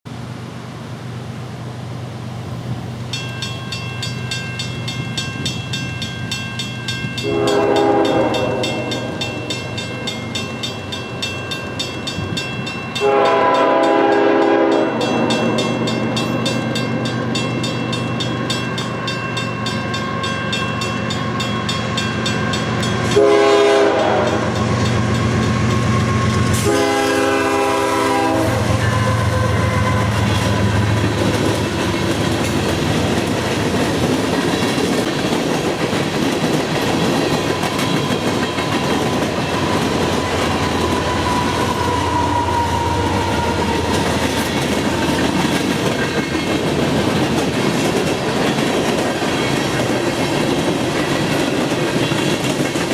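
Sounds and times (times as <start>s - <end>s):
diesel locomotive engine rumbling: 0.1s - 52.9s
locomotive air horn blasts: 7.2s - 9.5s, 13.0s - 15.8s, 23.0s - 30.9s, 39.6s - 44.2s.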